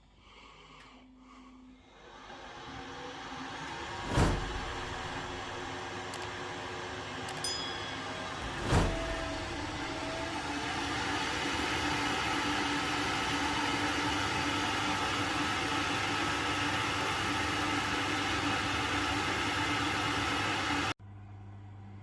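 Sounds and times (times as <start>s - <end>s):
machine whirring: 2.0s - 20.8s
low hum: 7.3s - 10.8s.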